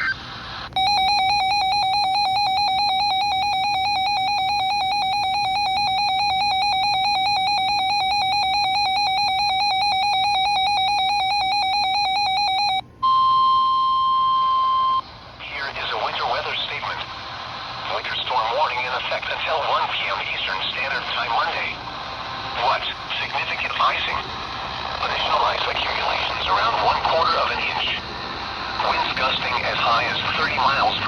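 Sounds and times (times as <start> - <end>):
steady warning alarm tone: 0.0 - 15.0, 22.7 - 31.0
warbling electronic alarm tone: 0.8 - 15.0.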